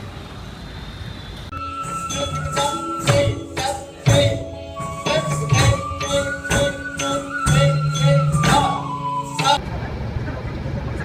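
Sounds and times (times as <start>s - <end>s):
held melodic notes: 1.5s - 9.6s
percussion strikes: 1.5s - 9.6s.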